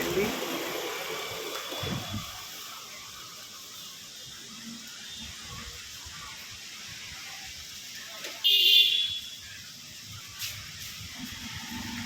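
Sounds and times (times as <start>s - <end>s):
wind rustling leaves: 0.0s - 12.0s.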